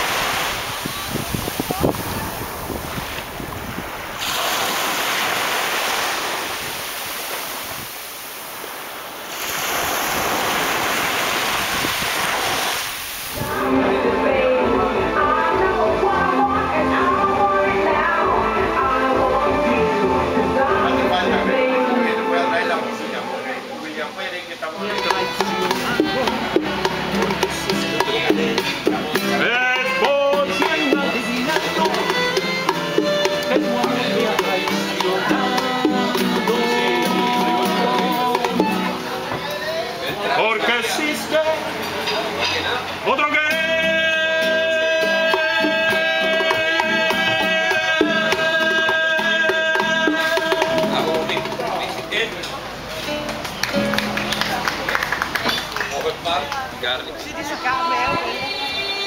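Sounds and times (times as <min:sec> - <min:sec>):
sea waves washing in: 0:00.0 - 0:16.4
music with percussion and melody: 0:24.8 - 0:39.5, 0:44.5 - 0:54.6.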